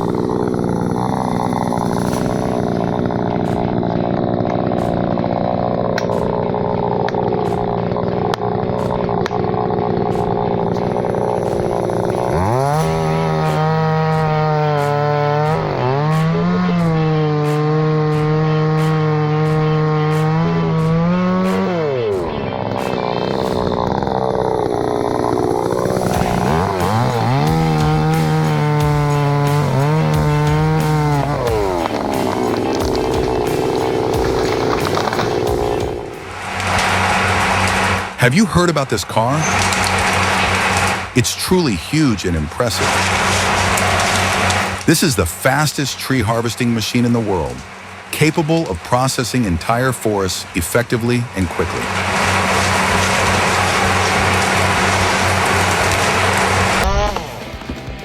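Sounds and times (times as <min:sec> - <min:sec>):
sharp ticks: 0:00.0 - 0:38.2
chainsaw running at high revs: 0:00.0 - 0:58.0.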